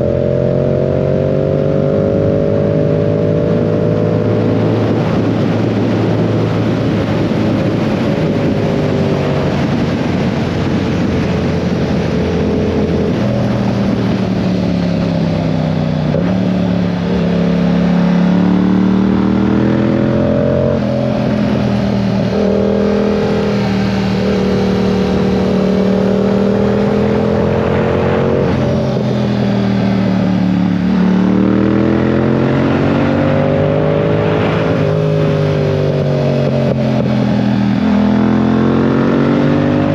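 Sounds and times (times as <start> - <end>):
motorcycle engine changing gears: 0.0 - 39.9
steady rush of noise: 0.0 - 39.9.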